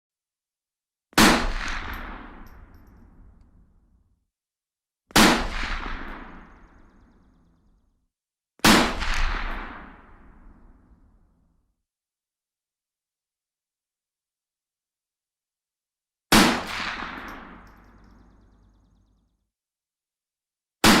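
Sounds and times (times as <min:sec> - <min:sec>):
rifle shots echoing: 0:16.3 - 0:18.2.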